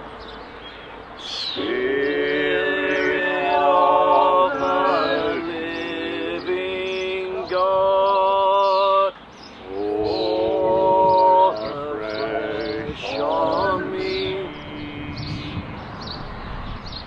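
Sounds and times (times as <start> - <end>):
birds chirping faintly: 0.0 - 17.0
voices singing prayer song: 1.2 - 16.1.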